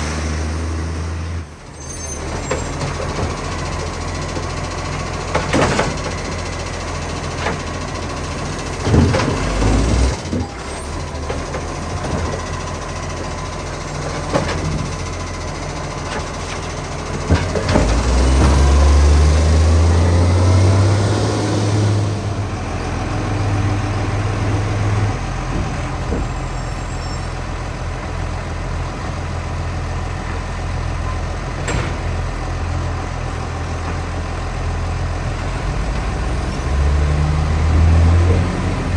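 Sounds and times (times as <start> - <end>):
truck engine revving with exhaust leak: 0.0 - 38.9
sharp knocks and bangs: 31.6 - 32.4.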